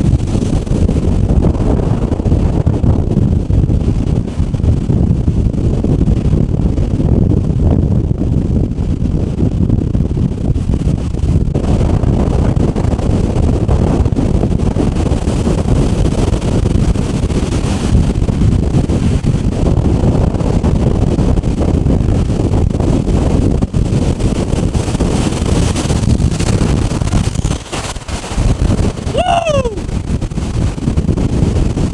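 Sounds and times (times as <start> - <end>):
storm wind buffeting microphone: 0.0 - 31.9
surf washing on rocky shore: 11.6 - 31.9.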